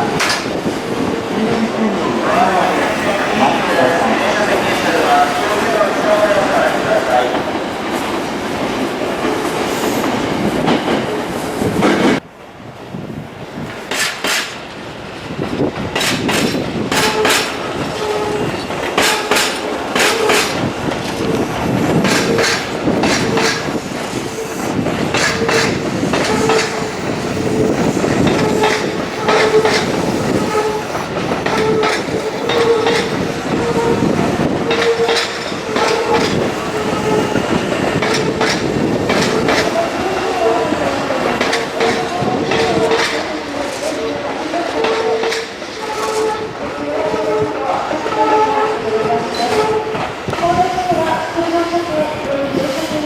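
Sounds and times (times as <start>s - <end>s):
train wheels clacking over rail joints: 0.0s - 1.7s, 13.6s - 47.5s, 49.0s - 51.3s.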